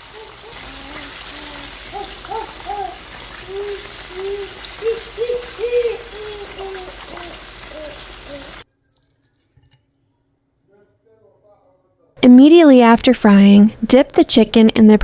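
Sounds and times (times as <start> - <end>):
chicken deep-frying in oil: 0.0 - 8.7.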